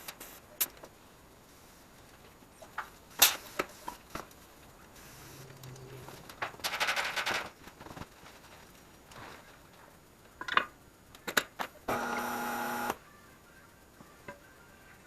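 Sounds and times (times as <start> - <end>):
buzzing rattle: 11.9 - 13.0
motor hum: 11.9 - 13.0.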